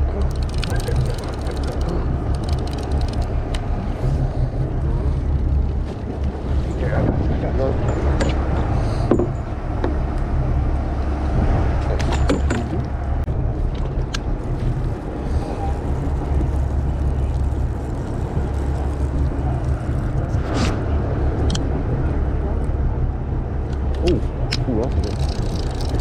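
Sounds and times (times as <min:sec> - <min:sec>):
boat engine rumble: 0:00.0 - 0:26.0
wind on microphone: 0:00.0 - 0:26.0.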